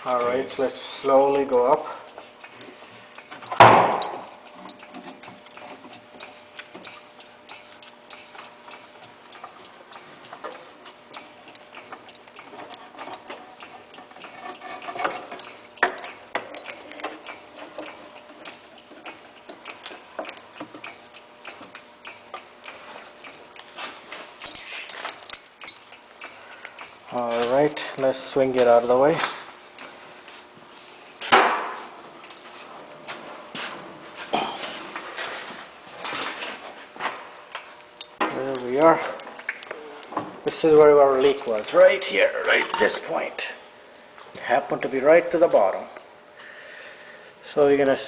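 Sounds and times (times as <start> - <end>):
small metal ticks and clicks: 0.0 - 30.4
faint steady hum: 0.0 - 48.0.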